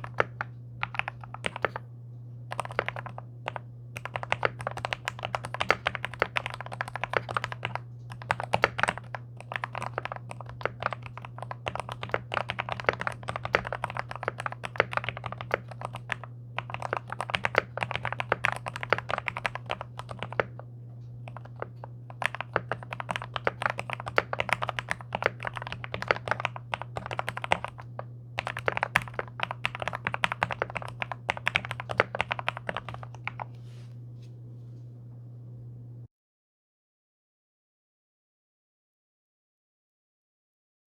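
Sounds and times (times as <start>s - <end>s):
fast typing on mechanical keyboard: 0.0s - 1.8s, 2.5s - 20.6s, 21.2s - 33.5s
steady low hum: 0.0s - 36.1s.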